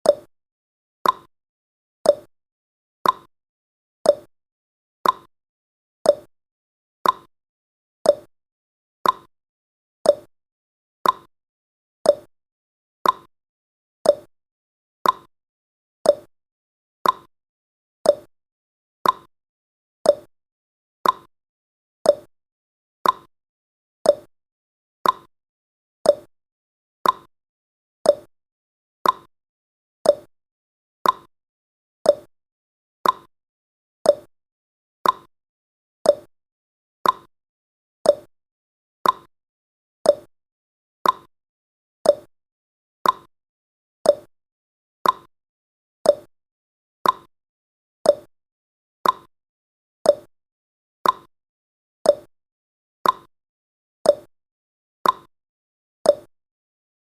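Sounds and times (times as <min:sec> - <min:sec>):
clock-like timer ticks: 0:00.0 - 0:00.3, 0:01.0 - 0:01.3, 0:02.0 - 0:02.3, 0:03.0 - 0:03.3, 0:04.0 - 0:04.3, 0:05.0 - 0:05.3, 0:06.0 - 0:06.3, 0:07.0 - 0:07.3, 0:08.0 - 0:08.3, 0:09.0 - 0:09.3, 0:10.0 - 0:10.3, 0:11.0 - 0:11.3, 0:12.0 - 0:12.3, 0:13.0 - 0:13.3, 0:14.0 - 0:14.3, 0:15.0 - 0:15.3, 0:16.0 - 0:16.3, 0:17.0 - 0:17.3, 0:18.0 - 0:18.3, 0:19.0 - 0:19.3, 0:20.0 - 0:20.3, 0:21.0 - 0:21.3, 0:22.0 - 0:22.3, 0:23.0 - 0:23.3, 0:24.0 - 0:24.3, 0:25.0 - 0:25.3, 0:26.0 - 0:26.3, 0:27.0 - 0:27.3, 0:28.0 - 0:28.3, 0:29.0 - 0:29.3, 0:30.0 - 0:30.3, 0:31.0 - 0:31.3, 0:32.0 - 0:32.3, 0:33.0 - 0:33.3, 0:34.0 - 0:34.3, 0:35.0 - 0:35.3, 0:36.0 - 0:36.3, 0:37.0 - 0:37.3, 0:38.0 - 0:38.3, 0:39.0 - 0:39.3, 0:40.0 - 0:40.3, 0:41.0 - 0:41.3, 0:42.0 - 0:42.3, 0:43.0 - 0:43.3, 0:44.0 - 0:44.3, 0:45.0 - 0:45.3, 0:46.0 - 0:46.3, 0:47.0 - 0:47.3, 0:48.0 - 0:48.3, 0:49.0 - 0:49.3, 0:50.0 - 0:50.3, 0:51.0 - 0:51.3, 0:52.1 - 0:52.3, 0:53.0 - 0:53.3, 0:54.0 - 0:54.3, 0:55.0 - 0:55.3, 0:56.1 - 0:56.3.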